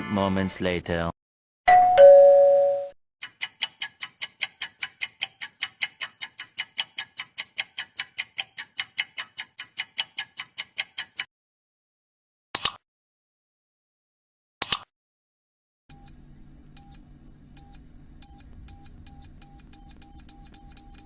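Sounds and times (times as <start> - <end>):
two-tone chime: 1.7 - 2.9
clock ticking fast: 3.2 - 11.3.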